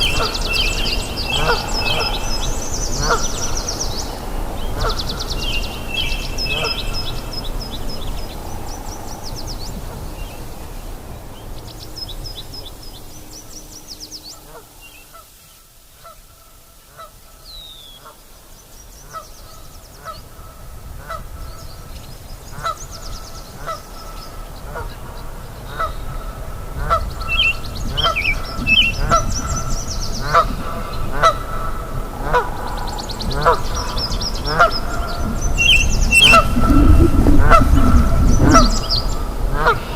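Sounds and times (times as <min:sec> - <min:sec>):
ape short repeated calls: 0:00.0 - 0:01.0, 0:35.6 - 0:38.9
river water rushing: 0:00.0 - 0:02.0, 0:35.6 - 0:39.9
birds chirping and trilling: 0:00.0 - 0:04.2, 0:32.4 - 0:39.9.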